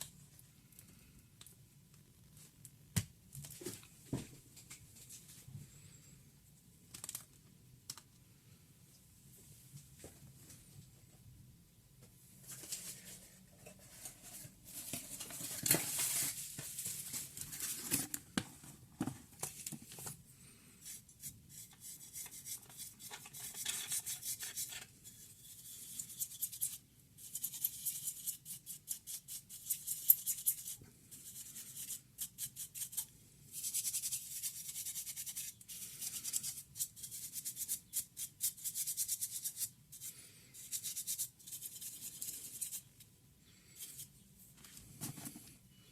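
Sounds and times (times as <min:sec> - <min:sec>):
scratching and rubbing: 0:20.9 - 0:43.0.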